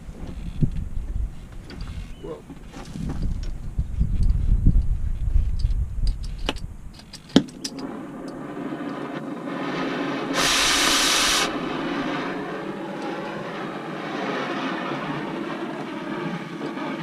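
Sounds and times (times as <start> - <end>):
loud bright hiss: 9.4 - 12.4
metal-cutting equipment hissing: 10.2 - 12.4.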